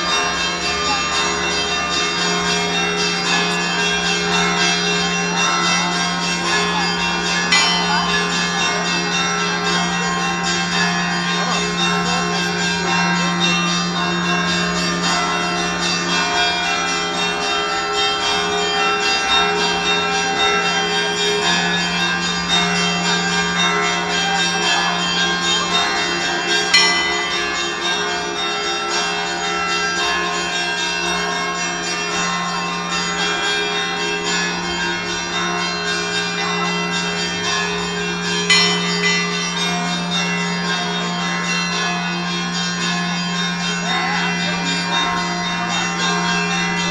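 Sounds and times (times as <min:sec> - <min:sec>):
church bells pealing: 0:00.0 - 0:46.9
sharp loud bell strikes: 0:02.6 - 0:09.0, 0:35.4 - 0:46.9.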